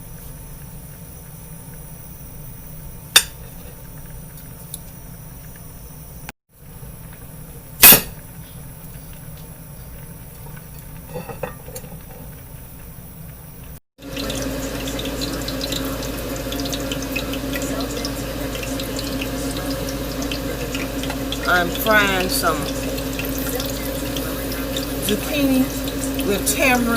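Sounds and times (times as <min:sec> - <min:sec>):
vegetables sizzling in oil: 0:14.0 - 0:26.9.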